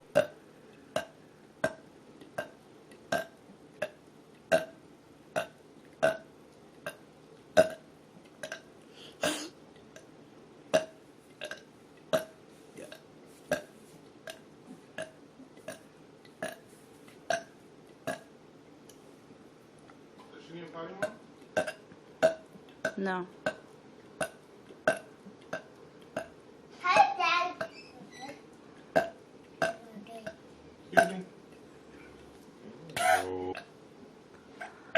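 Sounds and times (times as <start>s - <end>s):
woman burping: 9.2s - 9.5s, 33.0s - 33.6s.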